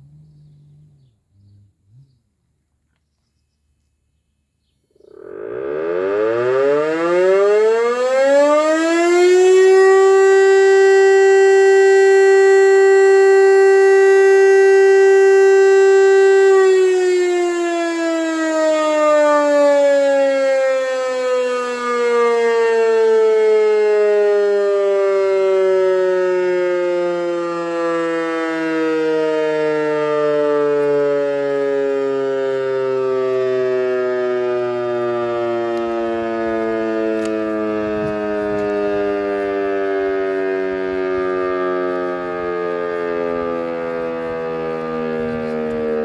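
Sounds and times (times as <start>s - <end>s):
motor siren winding down: 5.0s - 46.0s.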